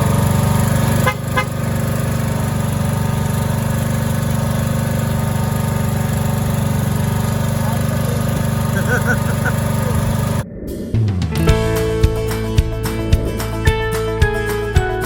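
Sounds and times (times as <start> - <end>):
engine running steadily: 0.0 - 10.5.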